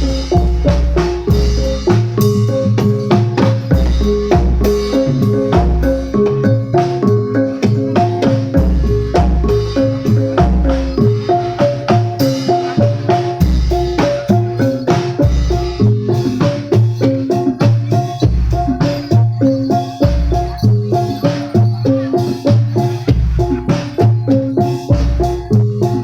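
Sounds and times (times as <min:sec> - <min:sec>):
metallophones striking a melody: 0:00.0 - 0:26.0.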